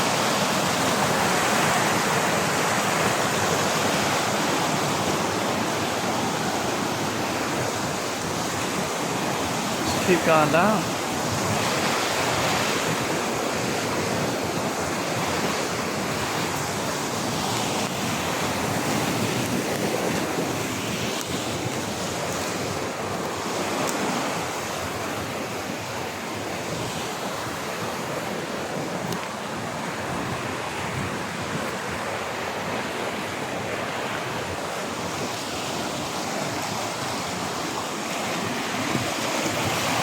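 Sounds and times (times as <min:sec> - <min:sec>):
river water rushing: 0:00.0 - 0:40.0
wind on microphone: 0:26.6 - 0:32.8.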